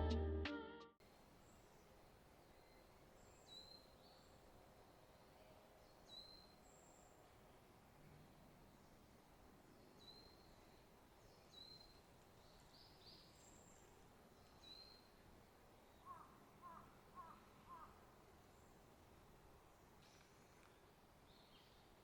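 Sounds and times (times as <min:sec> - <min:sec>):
low bird calls: 0:16.0 - 0:18.0.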